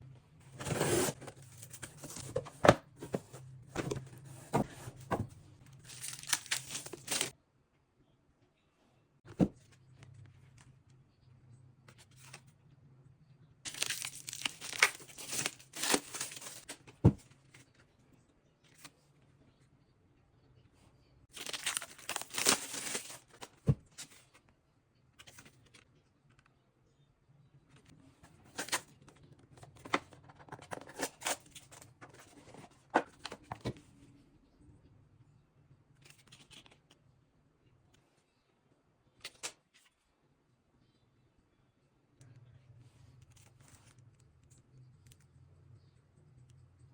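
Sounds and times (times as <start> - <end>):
packaging rustling: 0.6 - 7.3, 13.7 - 16.7, 21.3 - 23.5.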